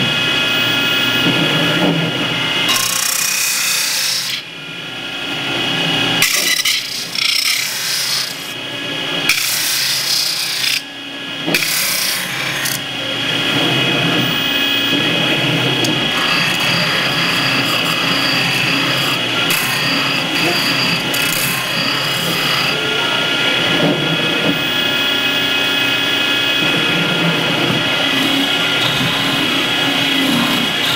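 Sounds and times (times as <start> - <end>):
metal-spinning lathe rubbing: 13.5 - 30.9.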